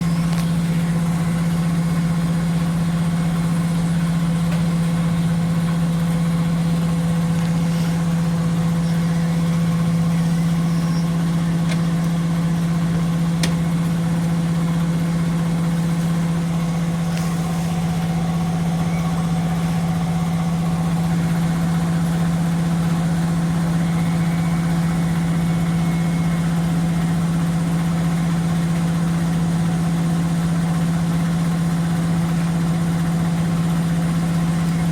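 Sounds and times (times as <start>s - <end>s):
washing machine spinning hum: 0.0s - 34.9s.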